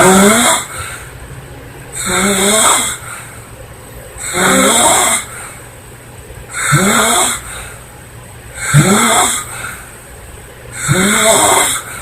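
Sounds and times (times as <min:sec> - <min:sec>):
woman snoring loudly: 0:00.0 - 0:00.7, 0:02.0 - 0:03.0, 0:04.2 - 0:05.3, 0:06.6 - 0:07.5, 0:08.6 - 0:09.5, 0:10.8 - 0:12.0.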